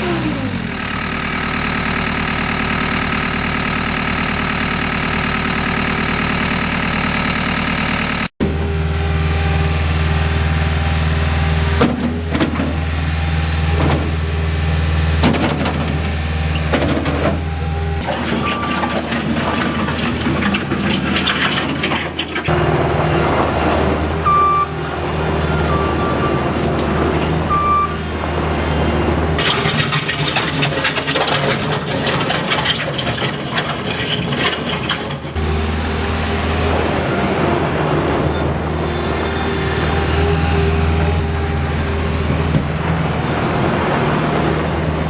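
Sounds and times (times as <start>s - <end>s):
loader engine running: 0.0s - 45.0s
knocks and clatters: 15.2s - 17.4s, 18.0s - 22.5s, 29.4s - 35.4s.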